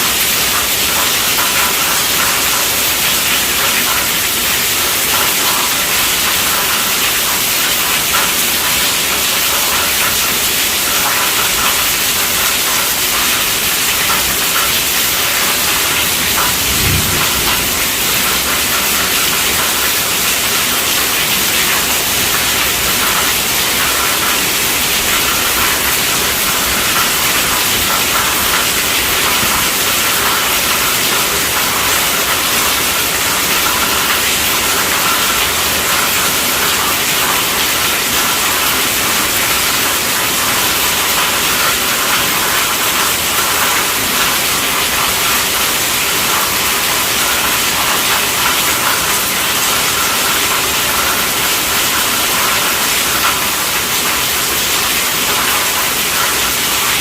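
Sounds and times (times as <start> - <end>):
heavy rain on tent roof: 0.0 - 57.0
low thump: 16.5 - 17.8.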